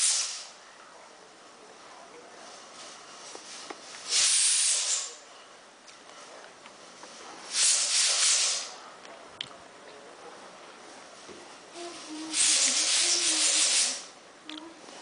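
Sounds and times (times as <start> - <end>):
hissing bursts: 0.0 - 0.6, 3.5 - 5.2, 7.5 - 8.8, 11.9 - 14.2.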